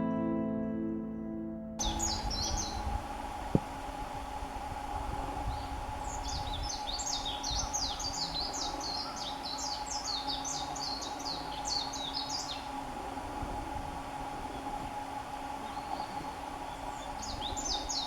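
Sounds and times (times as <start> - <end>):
faint steady hum: 0.7 - 18.0
small songbird singing: 1.8 - 3.0, 5.4 - 12.9, 15.6 - 18.0.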